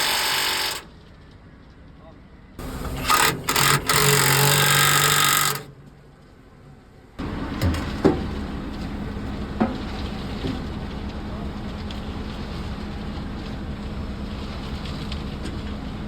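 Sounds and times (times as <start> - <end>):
low engine-like rumble: 5.8 - 16.0.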